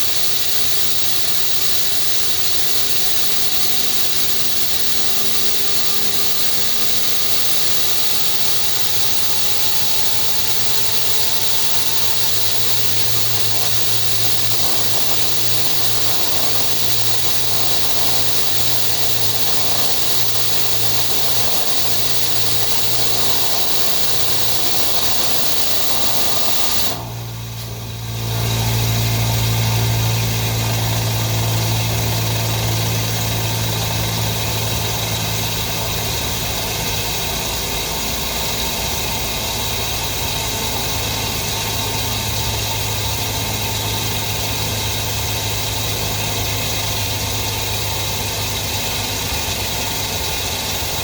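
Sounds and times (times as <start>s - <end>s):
low hum: 0.0s - 35.0s
machine spindle running: 0.0s - 51.0s
whining tones: 0.0s - 51.0s.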